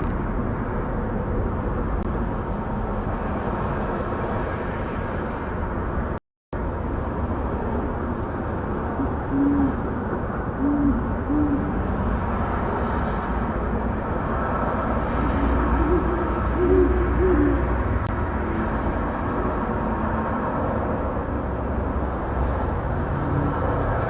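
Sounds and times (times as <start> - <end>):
background hiss and hum: 6.8 - 13.7
owl hooting: 9.0 - 9.9, 10.6 - 11.8, 15.2 - 17.8.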